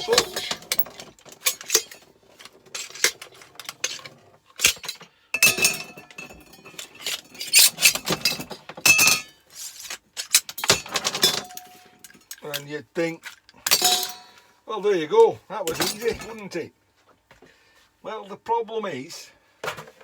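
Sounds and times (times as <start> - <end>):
metal and glass parts clinking: 0.0 - 14.4, 15.7 - 16.4.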